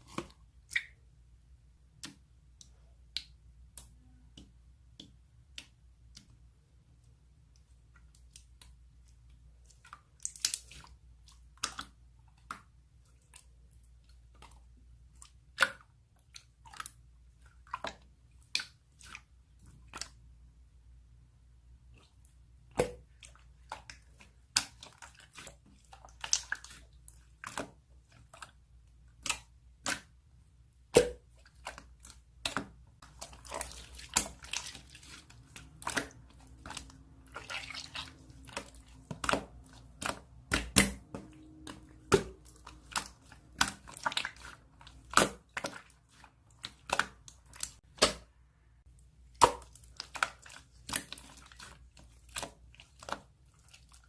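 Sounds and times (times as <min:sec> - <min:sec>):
slime squished by hand: 0:30.8 - 0:48.4, 0:49.1 - 0:54.0.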